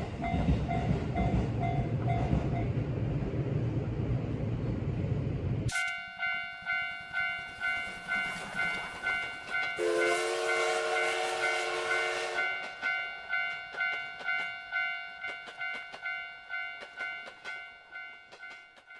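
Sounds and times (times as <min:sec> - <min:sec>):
train rumbling past: 0:00.0 - 0:05.7, 0:06.6 - 0:18.9
railroad crossing bell clanging: 0:00.2 - 0:02.7, 0:05.7 - 0:18.9
train horn: 0:09.8 - 0:12.6.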